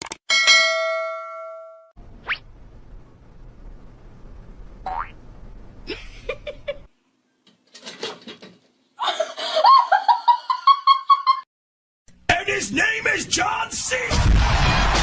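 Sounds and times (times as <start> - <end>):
person laughing: 5.9 - 6.9, 9.0 - 11.4.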